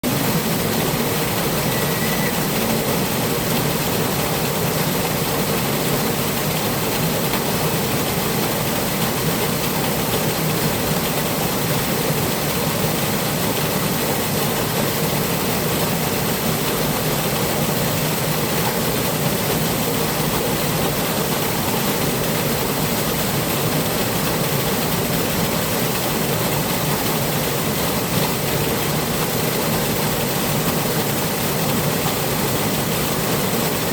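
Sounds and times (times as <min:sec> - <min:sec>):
babbling water: 0:00.0 - 0:03.4.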